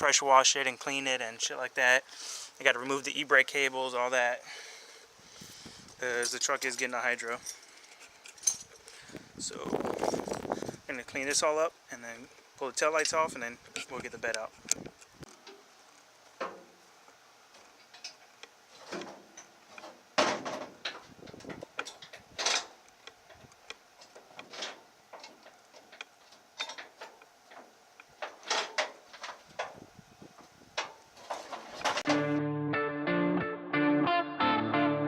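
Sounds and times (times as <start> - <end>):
hand tools clicking and knocking: 17.6 - 29.8, 30.8 - 32.2.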